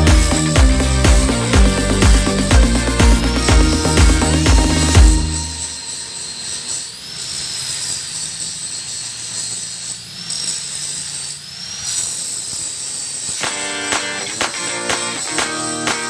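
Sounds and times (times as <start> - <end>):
high whine: 0.0 - 7.8, 13.3 - 16.0
metal lathe running: 0.0 - 16.0.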